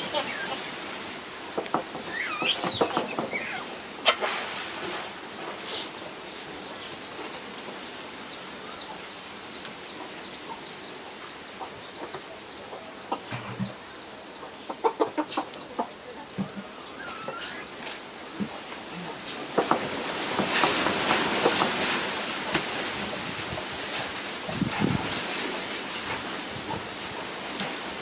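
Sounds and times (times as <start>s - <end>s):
bird cheeping: 2.1s - 3.8s, 16.6s - 17.8s.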